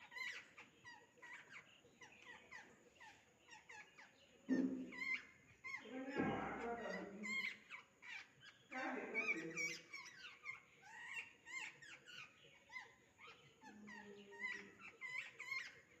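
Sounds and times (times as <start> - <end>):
small birds chirping: 0.0 - 16.0.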